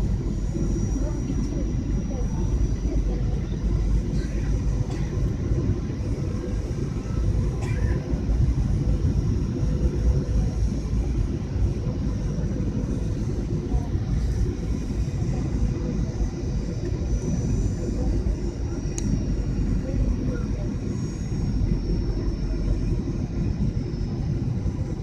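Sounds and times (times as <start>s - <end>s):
airliner engine rumble: 0.0s - 25.0s
faint steady whine: 0.0s - 25.0s.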